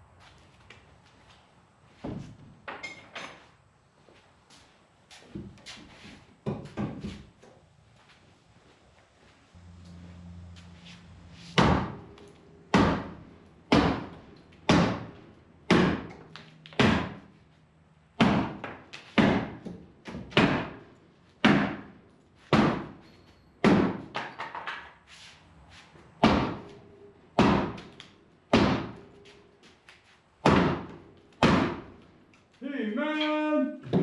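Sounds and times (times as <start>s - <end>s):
hammer blows on wooden shelf: 11.5s - 12.0s, 12.7s - 15.1s, 15.7s - 16.2s, 16.8s - 17.3s, 18.2s - 20.8s, 21.4s - 21.9s, 22.5s - 23.0s, 23.6s - 24.2s, 28.5s - 29.0s, 30.4s - 31.9s.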